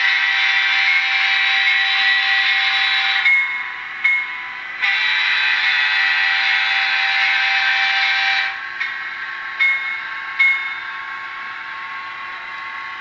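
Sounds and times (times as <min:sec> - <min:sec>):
model train horn: 0:00.0 - 0:03.3, 0:04.8 - 0:08.6
simulated diesel engine: 0:00.0 - 0:13.0.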